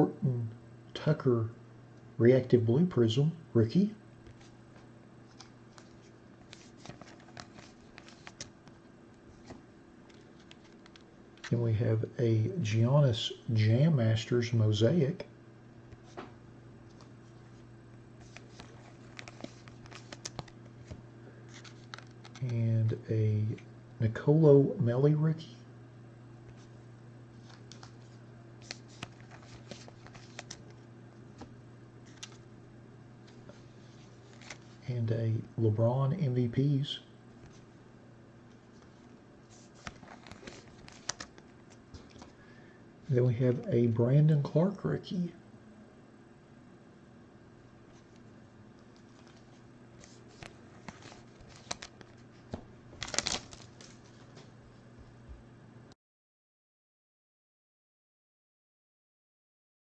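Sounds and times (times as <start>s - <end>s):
low steady hum: 0.0s - 55.9s
pack wrapping crinkling: 18.2s - 22.5s, 27.4s - 30.8s, 39.5s - 42.3s, 48.9s - 54.4s.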